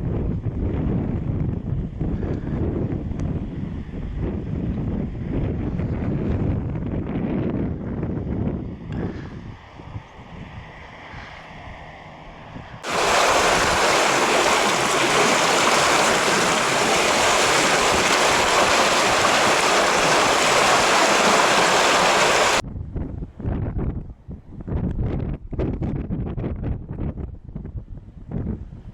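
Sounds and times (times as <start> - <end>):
faint wind rumble: 8.7 - 22.6
floodwater rushing: 12.8 - 22.6.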